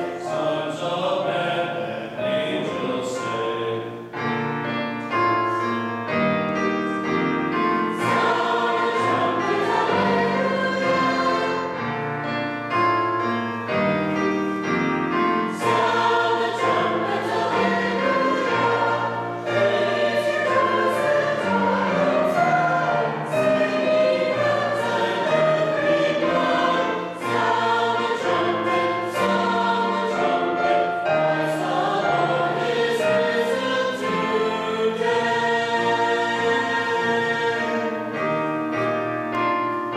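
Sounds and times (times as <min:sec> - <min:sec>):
choir and congregation singing a hymn: 0:00.0 - 0:39.9.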